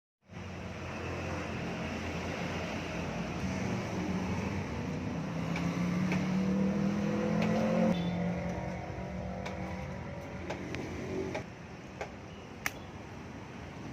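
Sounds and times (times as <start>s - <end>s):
motorcycle engine revving: 3.4s - 11.4s.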